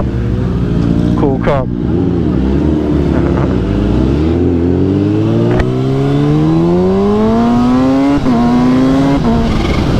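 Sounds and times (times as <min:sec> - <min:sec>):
car engine accelerating hard: 0:00.9 - 0:09.9.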